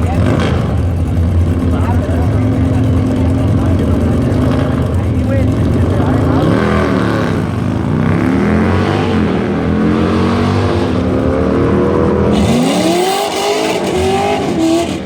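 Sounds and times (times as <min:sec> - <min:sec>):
car engine revving: 0:00.0 - 0:15.0.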